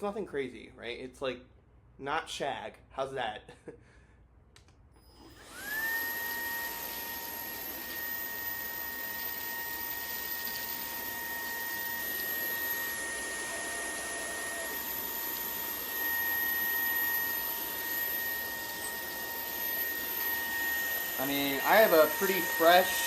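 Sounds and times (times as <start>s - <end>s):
stick vacuum motor whining: 5.0s - 23.0s.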